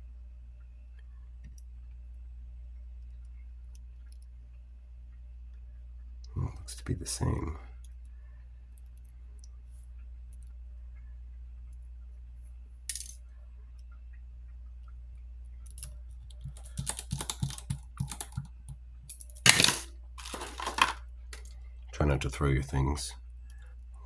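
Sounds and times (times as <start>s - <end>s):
tools clicking and tapping: 12.9s - 13.2s, 15.7s - 21.5s
object clattering on bench: 19.1s - 21.5s.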